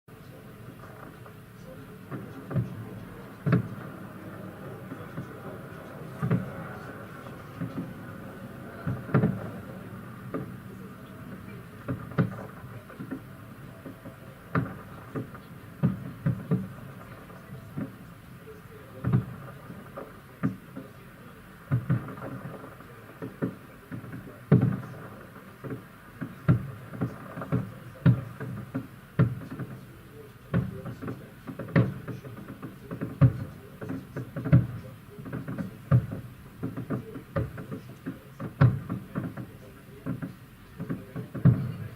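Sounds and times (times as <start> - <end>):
distant fireworks booming: 0.1 - 41.9
steady background hum: 0.1 - 41.9.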